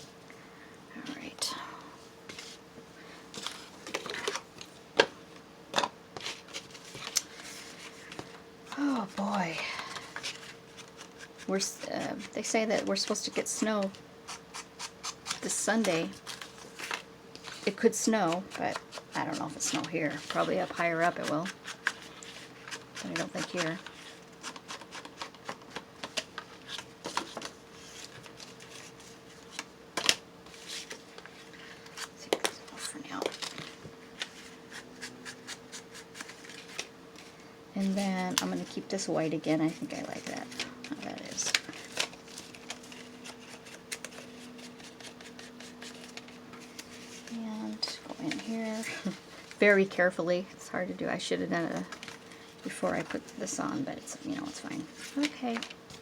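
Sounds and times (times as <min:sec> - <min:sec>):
faint steady hum: 0:00.0 - 0:56.0
paper rustling: 0:06.2 - 0:09.2, 0:15.3 - 0:38.7, 0:39.7 - 0:49.7, 0:54.4 - 0:56.0.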